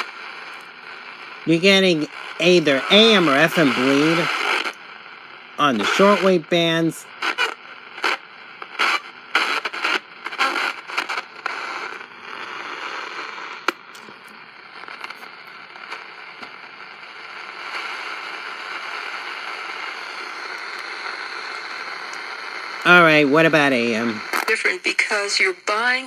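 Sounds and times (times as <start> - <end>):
choppy radio signal and crackle: 0.0 - 26.0
radio static hiss: 0.0 - 26.0.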